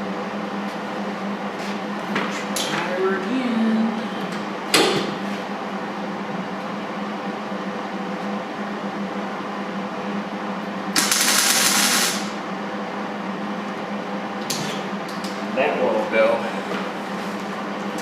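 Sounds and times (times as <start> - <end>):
steady low hum: 0.0 - 18.0
welder crackling hiss: 11.0 - 12.4.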